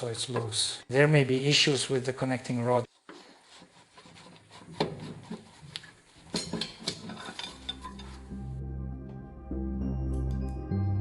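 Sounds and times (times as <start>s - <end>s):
background music: 7.5s - 11.0s.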